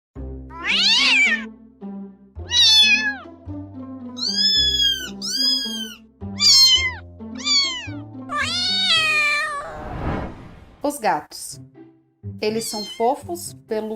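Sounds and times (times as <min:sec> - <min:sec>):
background music: 0:00.2 - 0:13.9
cats meowing: 0:00.5 - 0:01.5, 0:02.4 - 0:03.3, 0:04.2 - 0:09.8, 0:12.7 - 0:13.1.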